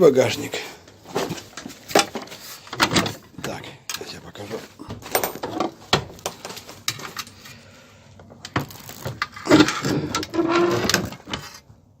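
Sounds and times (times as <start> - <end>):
door creak: 8.5 - 11.6
metal door rattling and scraping: 8.6 - 11.5.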